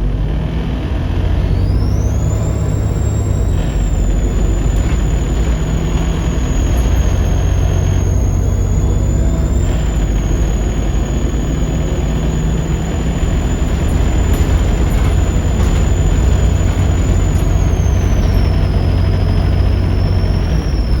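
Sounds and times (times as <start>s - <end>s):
bus diesel engine rumbling: 0.0s - 21.0s
turbo whistle: 1.3s - 21.0s.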